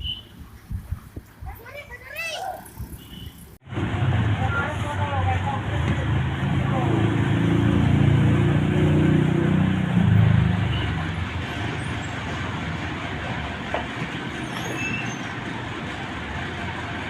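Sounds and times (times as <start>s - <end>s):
traffic noise: 0.0s - 17.0s
bus engine drone: 3.6s - 17.0s.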